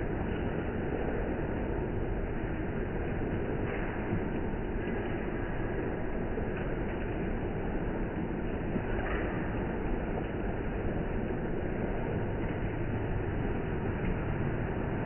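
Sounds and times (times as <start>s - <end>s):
steady rain hiss: 0.0s - 15.0s.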